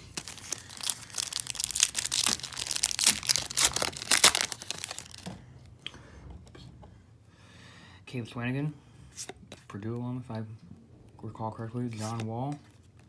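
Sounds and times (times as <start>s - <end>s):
plastic wrapper crinkling and tearing: 0.0s - 5.3s.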